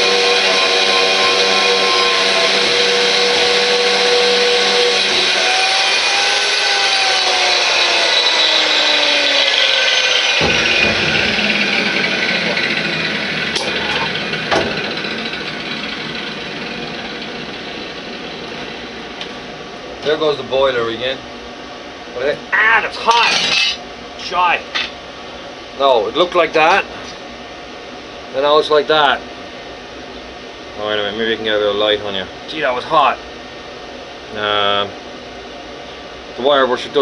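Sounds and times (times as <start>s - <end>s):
wire brush power tool scrubbing: 0.0s - 18.2s.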